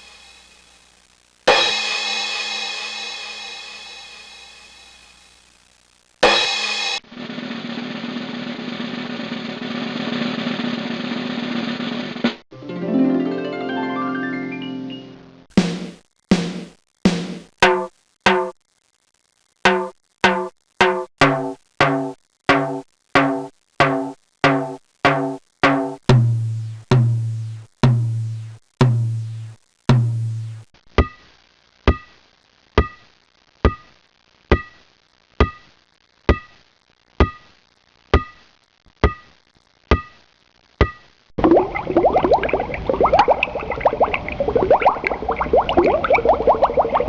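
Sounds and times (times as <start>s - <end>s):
percussive hits with pitched ring: 19.7s - 26.9s.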